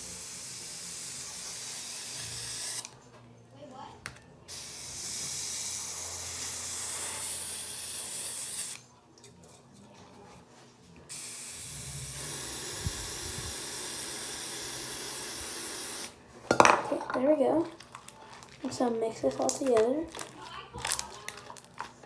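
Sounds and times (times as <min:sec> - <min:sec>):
aerosol spray hissing: 0:00.0 - 0:02.8, 0:04.5 - 0:08.8, 0:11.1 - 0:16.2.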